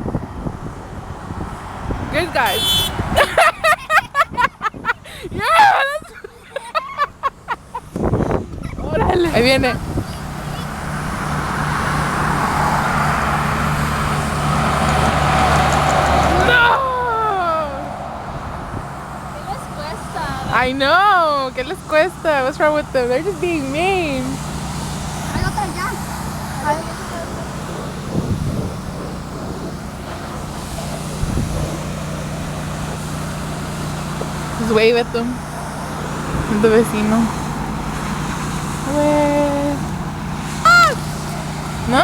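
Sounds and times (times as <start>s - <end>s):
highway traffic passing: 0.0s - 42.0s
truck engine drone: 0.0s - 42.0s
tyre and road noise: 0.0s - 42.0s.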